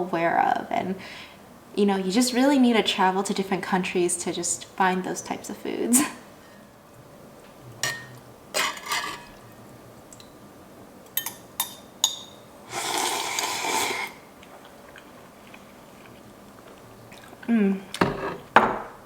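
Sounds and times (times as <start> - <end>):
slurping noodles: 12.7 - 14.2.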